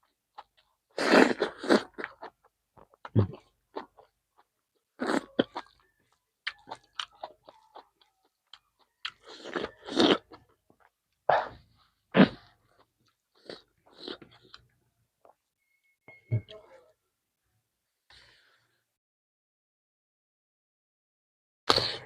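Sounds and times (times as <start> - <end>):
person chewing and crunching food: 0.0 - 15.5.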